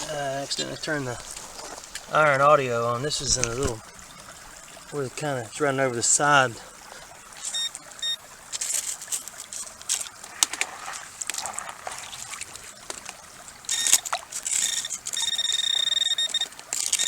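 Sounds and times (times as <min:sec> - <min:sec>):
water splashing and sloshing: 0:00.0 - 0:17.0
metal detector beeping: 0:07.4 - 0:08.2, 0:13.7 - 0:17.0.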